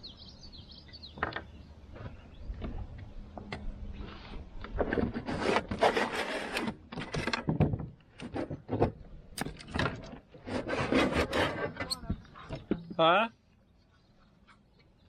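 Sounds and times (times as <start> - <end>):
rubbing and scraping: 4.0 - 12.7.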